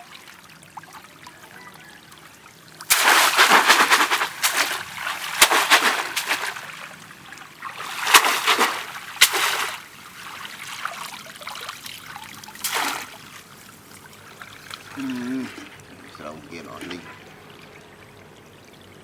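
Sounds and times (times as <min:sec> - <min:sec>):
sharp slaps on water: 0:02.9 - 0:06.7, 0:07.8 - 0:09.9, 0:12.6 - 0:13.2
water splashing: 0:02.9 - 0:15.5.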